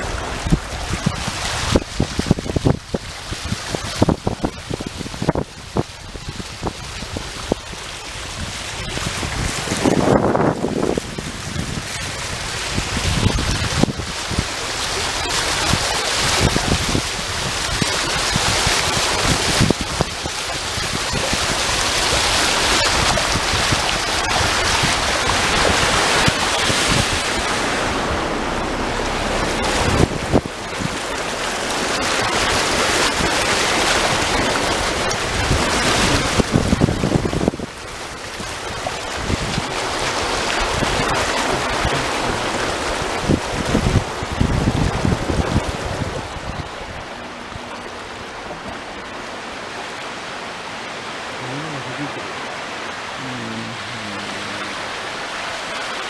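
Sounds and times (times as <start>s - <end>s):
wind gusting against microphone: 0.0s - 56.0s
low buffeting thuds: 24.9s - 31.9s.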